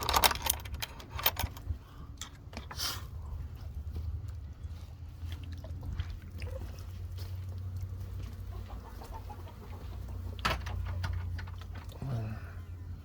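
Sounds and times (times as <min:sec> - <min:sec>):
chickens clucking: 0:07.9 - 0:11.7.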